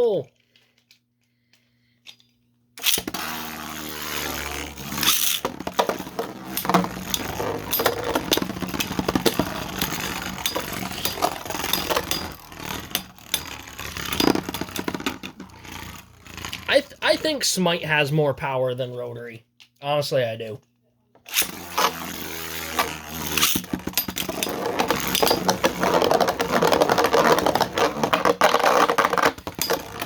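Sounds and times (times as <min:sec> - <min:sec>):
launcher whir: 0:02.8 - 0:16.7, 0:21.3 - 0:26.0
spinning tops clattering on plastic: 0:02.8 - 0:16.7, 0:21.3 - 0:30.0.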